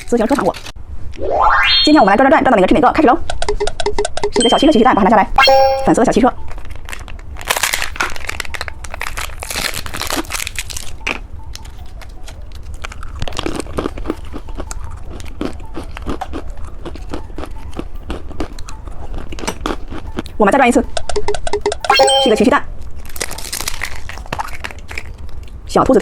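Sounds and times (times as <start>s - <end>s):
plastic wrapper crinkling: 6.5s - 13.6s, 23.0s - 25.1s.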